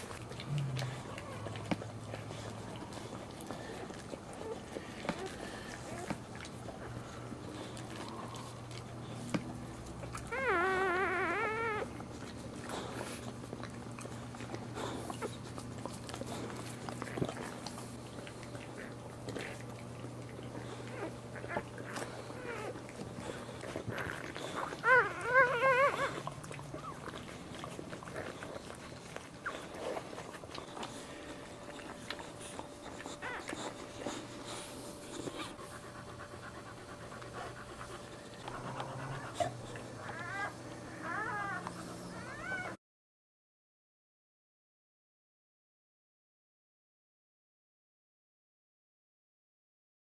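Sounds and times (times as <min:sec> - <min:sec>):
dog whining: 0:00.0 - 0:08.7, 0:10.0 - 0:15.6, 0:20.4 - 0:42.8
low steady hum: 0:00.0 - 0:42.8.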